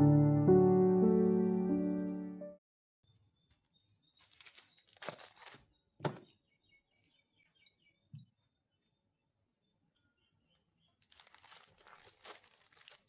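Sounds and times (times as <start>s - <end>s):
rustling: 4.2s - 6.2s, 11.0s - 13.0s.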